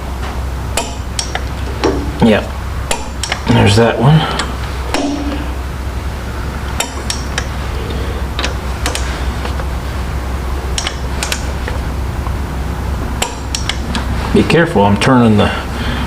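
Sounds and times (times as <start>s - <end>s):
steady low hum: 0.0s - 16.0s
torque wrench metal clicks: 2.9s - 3.5s, 10.7s - 11.5s.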